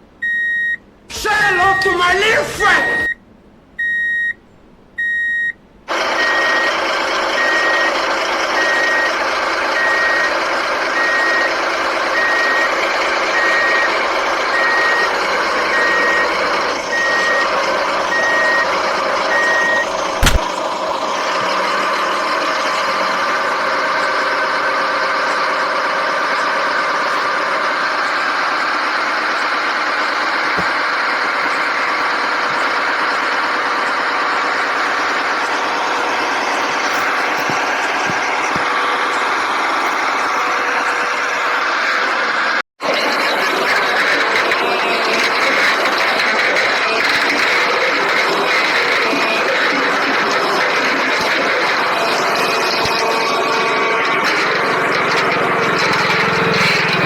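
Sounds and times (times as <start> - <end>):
truck engine running: 0.0 - 57.0
truck reversing alarm beeping: 0.1 - 3.2, 3.8 - 57.0
alarm switch click: 19.3 - 20.5.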